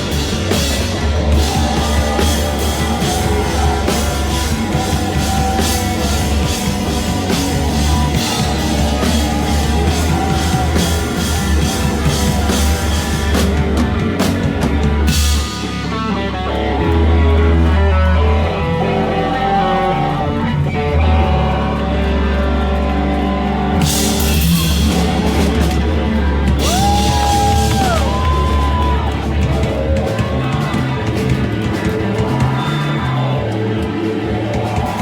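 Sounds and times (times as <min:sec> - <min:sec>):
drums and cymbals: 0:00.0 - 0:16.7, 0:23.8 - 0:35.0
electric guitar: 0:00.0 - 0:35.0.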